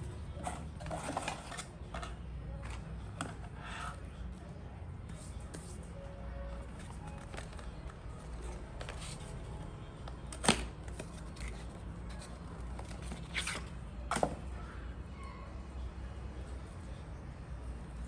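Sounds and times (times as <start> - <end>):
packaging being handled: 6.6 - 13.6.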